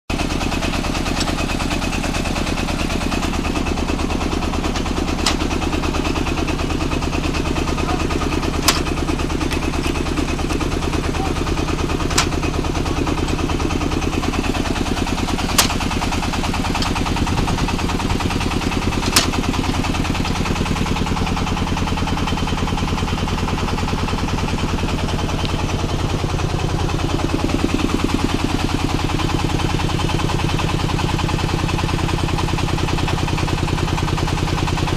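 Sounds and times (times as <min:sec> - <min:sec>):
brick press machine running: 0:00.1 - 0:34.9
sharp machine knocks: 0:07.9 - 0:09.1, 0:12.0 - 0:12.6, 0:15.4 - 0:19.9.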